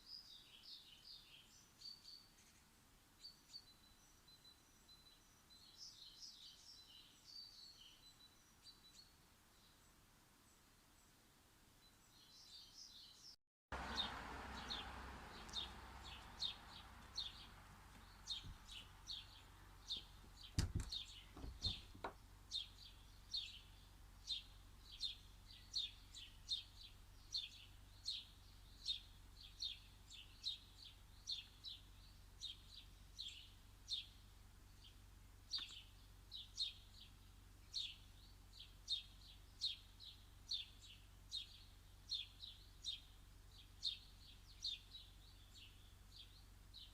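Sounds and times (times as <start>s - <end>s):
small bird chirping: 0.0s - 11.2s, 11.8s - 46.9s
soft knocks: 19.9s - 22.2s.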